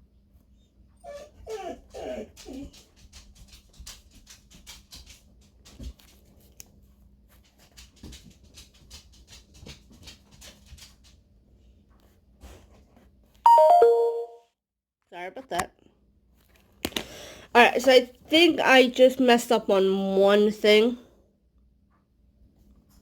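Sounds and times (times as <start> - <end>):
dog whining: 1.0 - 2.8.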